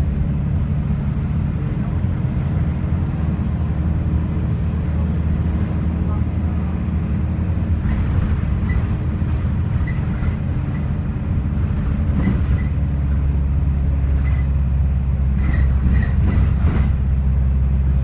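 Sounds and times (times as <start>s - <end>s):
bus engine drone: 0.0s - 18.0s
bodywork rattling and knocking: 7.6s - 13.4s, 15.3s - 17.4s.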